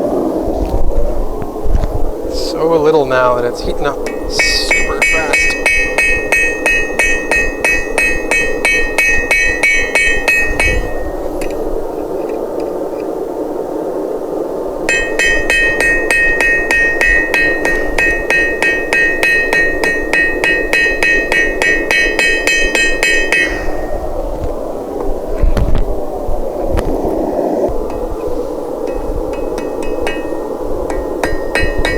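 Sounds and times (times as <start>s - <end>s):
hammer striking steel on anvil: 4.0s - 11.6s, 14.9s - 23.9s, 28.9s - 31.9s.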